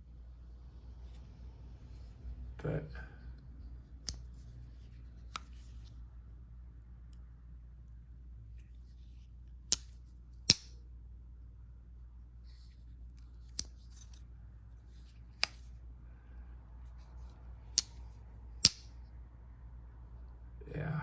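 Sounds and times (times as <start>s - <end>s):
pocket knife blade clicking: 10.5s - 10.8s, 18.6s - 18.9s.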